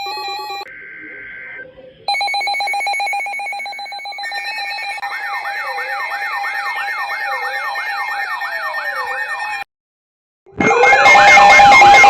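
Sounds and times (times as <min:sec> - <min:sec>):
warbling alarm tone: 0:00.0 - 0:09.6, 0:10.6 - 0:12.0
fast yelping siren: 0:04.2 - 0:09.7, 0:10.6 - 0:12.0
rising and falling siren wail: 0:04.9 - 0:09.6, 0:10.6 - 0:12.0.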